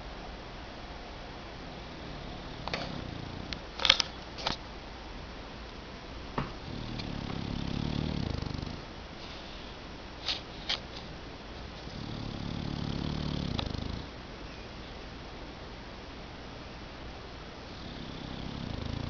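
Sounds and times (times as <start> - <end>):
dog snoring: 1.6 - 3.6, 6.6 - 8.9, 11.8 - 14.2, 17.7 - 19.0.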